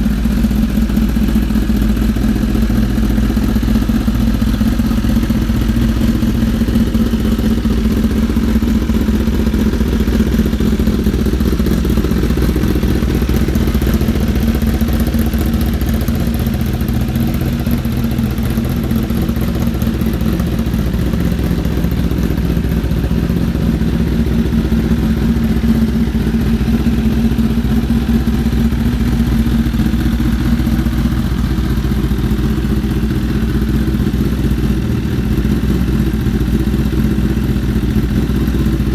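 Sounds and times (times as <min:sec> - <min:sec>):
motorcycle engine idling: 0:00.0 - 0:38.9.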